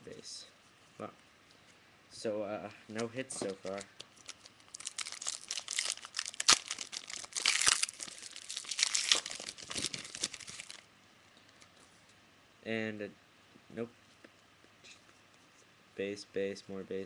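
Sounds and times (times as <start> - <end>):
wrapper tearing and crinkling: 3.6 - 10.9.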